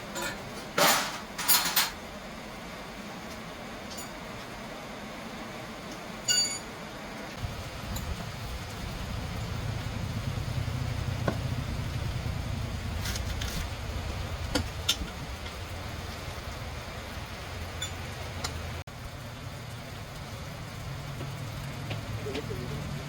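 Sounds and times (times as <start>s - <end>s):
machine humming: 7.0s - 23.0s.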